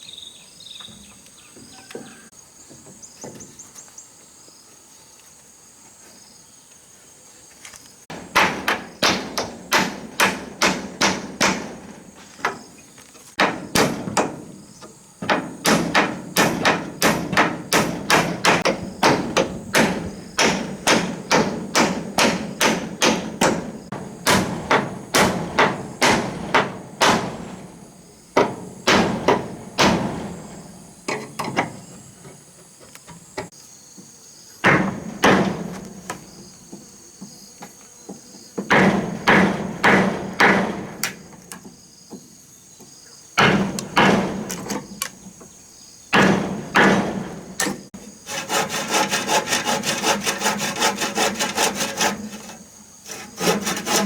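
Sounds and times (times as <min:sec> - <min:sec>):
insects chirping: 0:00.0 - 0:54.0
hammer blows on wood: 0:08.1 - 0:12.6, 0:15.2 - 0:30.6, 0:38.6 - 0:41.2, 0:46.1 - 0:54.0.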